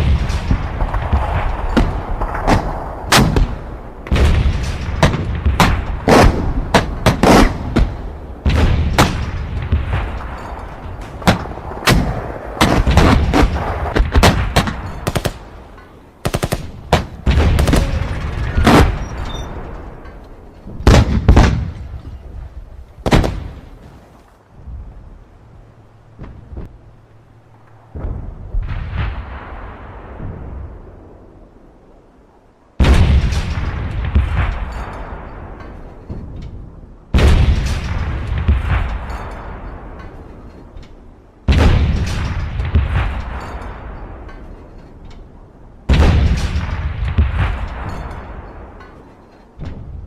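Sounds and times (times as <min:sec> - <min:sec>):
gunfire shots and bursts: 0:00.0 - 0:15.6, 0:16.2 - 0:19.7, 0:23.0 - 0:23.9
low rumble: 0:00.0 - 0:50.0.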